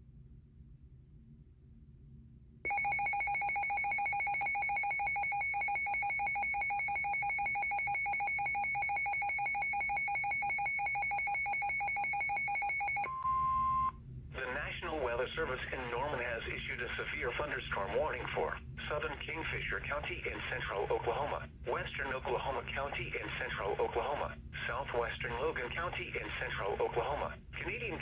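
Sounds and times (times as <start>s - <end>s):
faint hum: 0.0s - 28.0s
electronic alarm warble: 2.7s - 13.9s.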